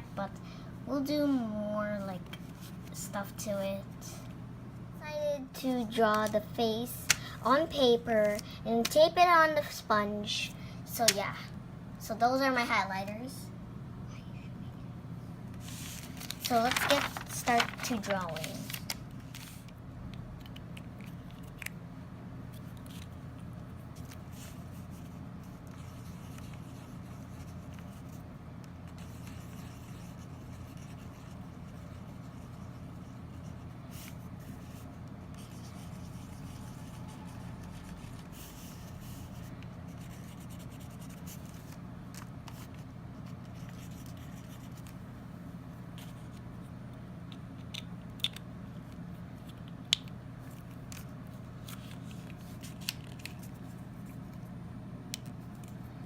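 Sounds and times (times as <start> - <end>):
steady low hum: 0.0 - 56.0
highlighter scratching on paper: 28.9 - 41.6.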